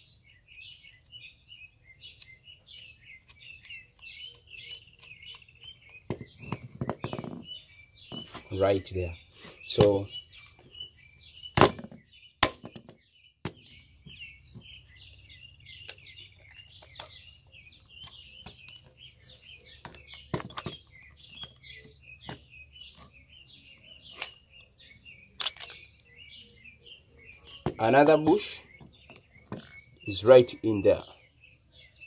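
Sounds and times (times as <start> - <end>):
birds chirping: 0.0 - 32.0
tools clicking on metal parts: 3.2 - 6.6, 25.4 - 26.0.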